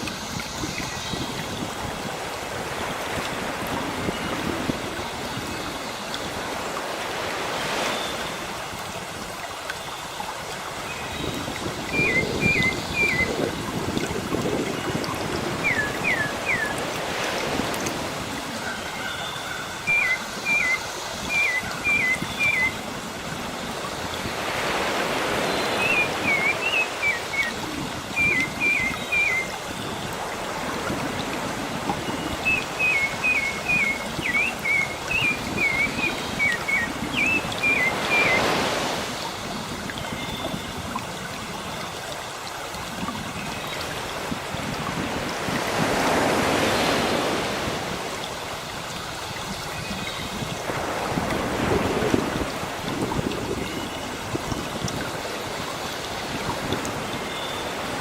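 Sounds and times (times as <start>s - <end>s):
sea surf washing: 0.0s - 21.4s, 22.4s - 39.9s, 43.8s - 58.0s
waves breaking: 22.4s - 43.2s, 43.8s - 49.6s.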